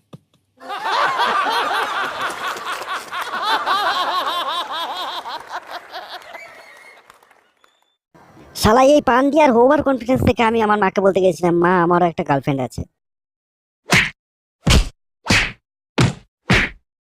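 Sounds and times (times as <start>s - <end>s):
audience laughing: 0.6s - 7.4s.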